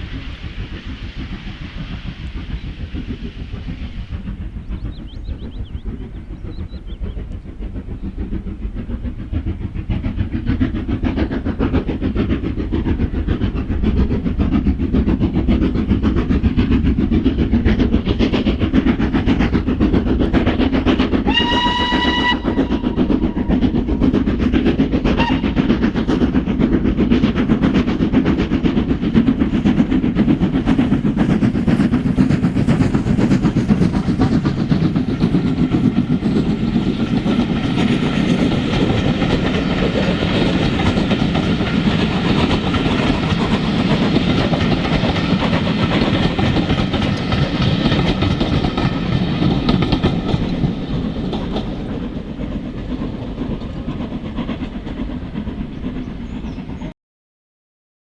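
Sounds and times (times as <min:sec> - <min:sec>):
steam locomotive: 0:00.0 - 0:57.0
train whistle blast: 0:21.3 - 0:23.2, 0:25.2 - 0:25.6.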